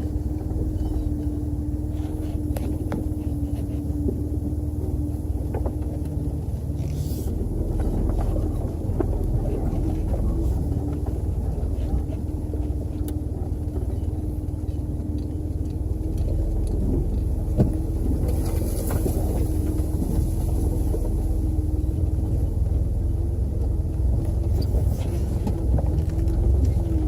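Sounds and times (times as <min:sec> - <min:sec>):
vehicle engine and road rumble: 0:00.0 - 0:27.0.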